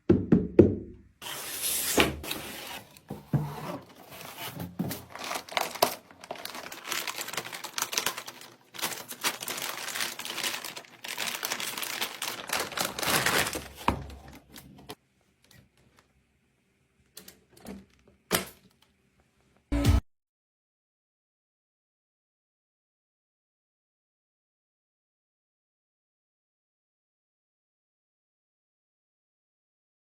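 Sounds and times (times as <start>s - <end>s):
packaging crinkling and rustling: 1.6s - 15.0s.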